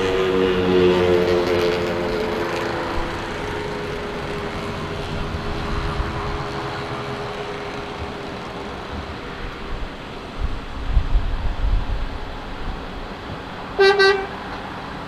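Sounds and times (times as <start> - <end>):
engine humming tones: 0.0 - 10.4
airliner engine rushing: 0.0 - 15.0.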